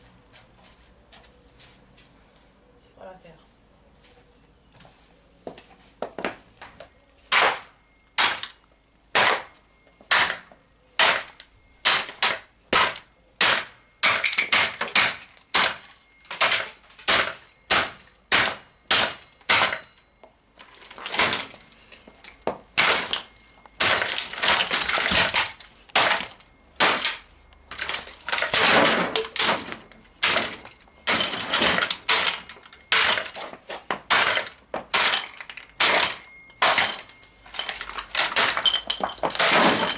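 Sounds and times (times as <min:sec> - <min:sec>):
blows smashing plastic toy car: 0:34.1 - 0:39.9.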